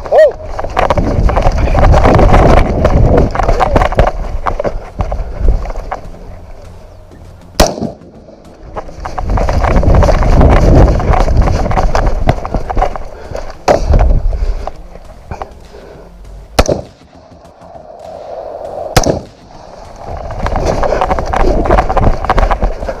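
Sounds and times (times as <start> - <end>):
rustling and scuffing: 0.4 - 23.0
rifle shots: 7.6 - 8.1, 16.6 - 17.0, 19.0 - 19.4.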